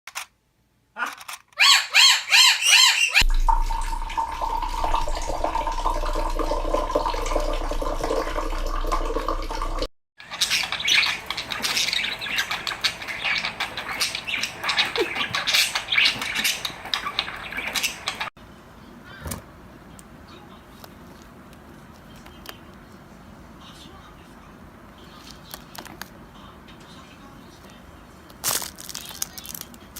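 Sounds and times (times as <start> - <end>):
birds squawking and chirping: 1.6 - 3.3, 10.2 - 18.3
low hum: 3.2 - 9.9.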